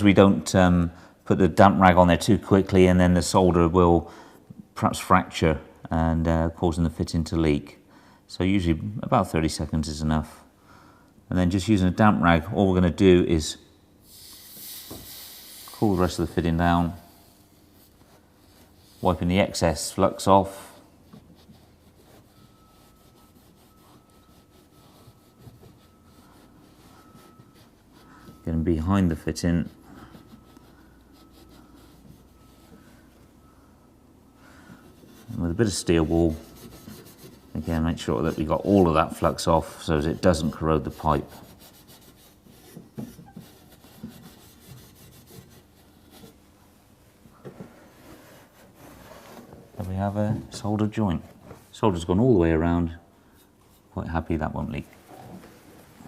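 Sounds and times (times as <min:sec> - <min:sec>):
rag rubbing on pipe: 0:14.2 - 0:20.3, 0:21.1 - 0:33.1, 0:34.8 - 0:46.5.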